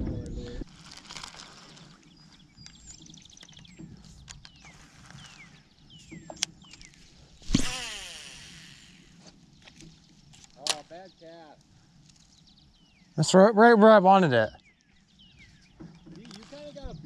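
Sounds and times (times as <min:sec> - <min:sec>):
birds chirping: 0:01.4 - 0:17.0
fishing rod cast whoosh: 0:07.4 - 0:09.0
fishing reel whirring: 0:07.4 - 0:09.2.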